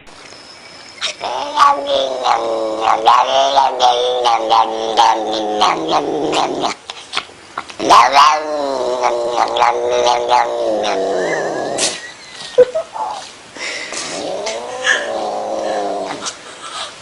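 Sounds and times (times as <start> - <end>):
cat yowling: 1.0 - 11.9, 14.2 - 16.2.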